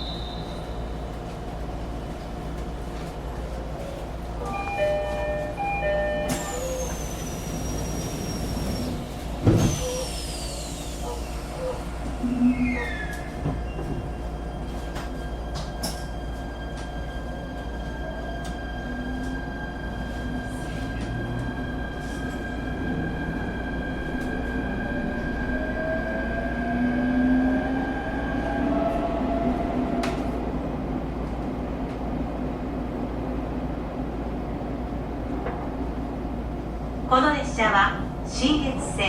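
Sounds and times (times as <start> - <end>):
train wheels rumbling on track: 0.0 - 39.0
traction motor whine: 6.3 - 13.3.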